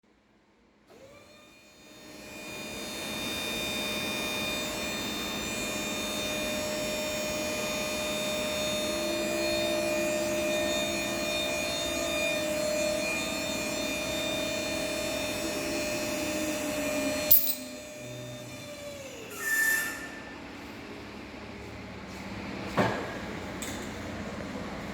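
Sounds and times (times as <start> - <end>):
hydraulic pump whining: 2.0 - 19.9.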